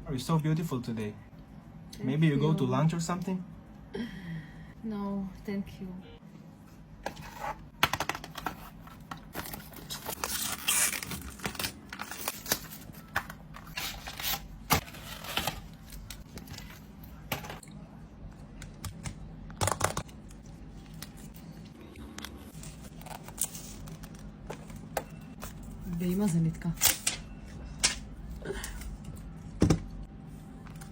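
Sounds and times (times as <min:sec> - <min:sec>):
plastic film peeling and crinkling: 0:09.2 - 0:16.6.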